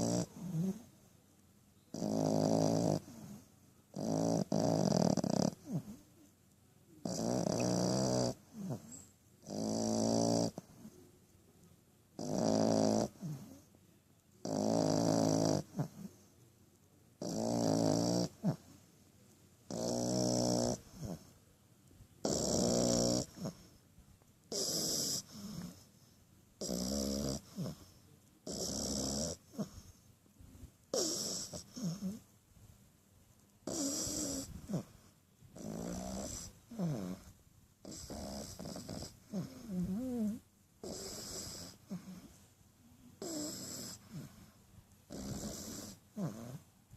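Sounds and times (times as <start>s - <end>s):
puppy snoring: 0.0s - 0.9s, 1.9s - 6.1s, 7.0s - 11.0s, 12.2s - 13.8s, 14.4s - 16.4s, 17.2s - 18.8s, 19.6s - 21.4s, 22.2s - 23.8s, 24.5s - 30.1s, 30.9s - 32.3s, 33.6s - 42.5s, 43.1s - 46.7s.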